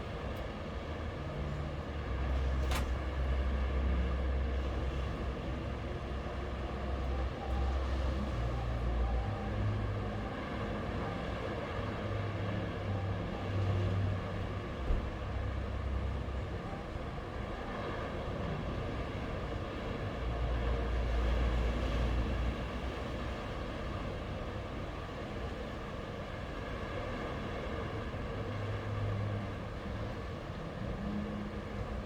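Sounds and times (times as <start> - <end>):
sea waves washing onto shore: 17.3 - 32.0.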